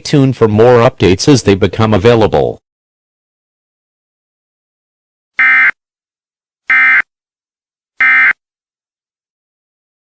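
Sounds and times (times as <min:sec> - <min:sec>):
short digital data bursts: 0:05.4 - 0:05.8, 0:06.7 - 0:07.0.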